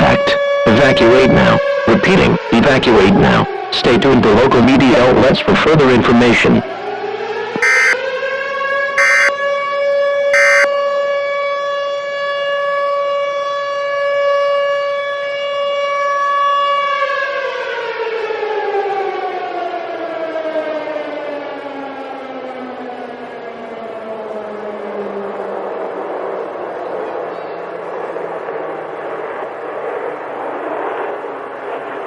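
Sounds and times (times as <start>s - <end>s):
siren wailing: 6.9s - 10.9s
short beeps: 7.6s - 8.0s, 9.0s - 9.3s, 10.4s - 10.7s.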